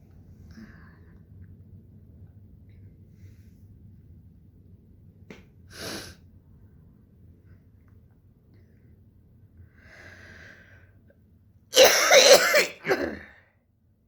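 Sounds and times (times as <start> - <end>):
quiet breath in: 0.4 - 1.3, 3.1 - 3.7, 9.6 - 11.0
woman coughing: 11.8 - 13.4.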